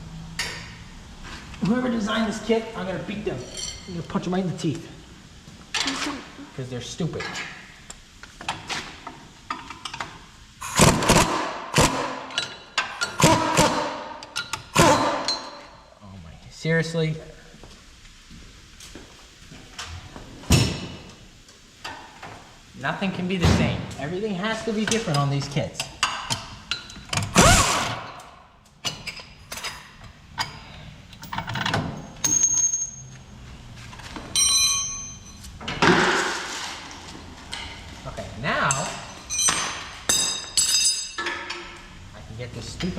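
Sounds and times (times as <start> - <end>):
ringing metallic ping: 32.2 - 33.1, 34.4 - 35.4
short ringing clang: 32.2 - 33.1, 34.4 - 35.4
metal tool clinks: 32.2 - 33.2, 34.4 - 35.5, 38.7 - 41.3.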